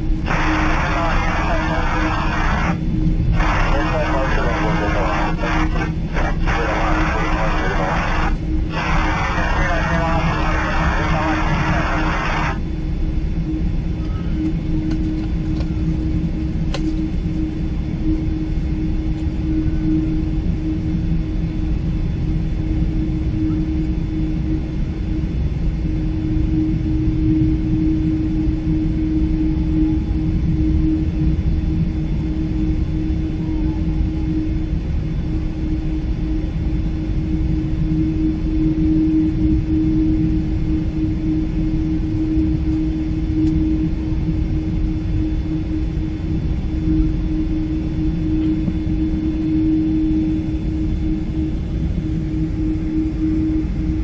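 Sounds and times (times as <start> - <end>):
airliner cabin engine drone: 0.0 - 54.0
constant cabin hum: 0.0 - 54.0.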